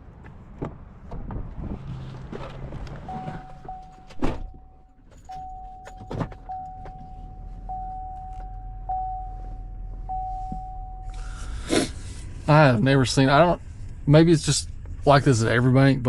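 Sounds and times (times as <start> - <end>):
electronic warning tone: 3.1 - 11.4.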